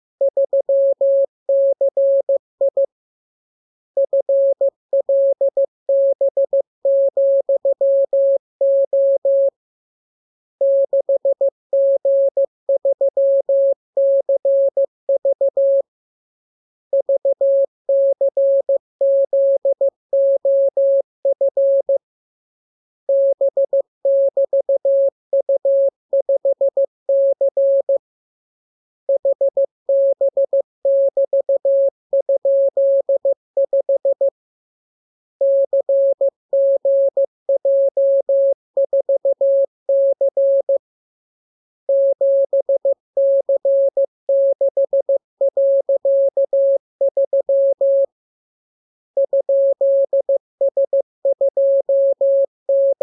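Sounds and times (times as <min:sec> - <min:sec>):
morse code tone: 0:52.5 - 0:53.0.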